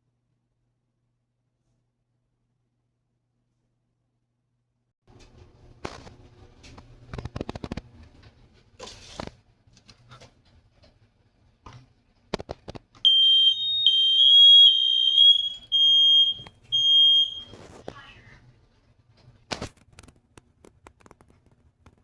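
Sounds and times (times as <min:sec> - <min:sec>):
smoke alarm beeping: 0:13.1 - 0:17.6.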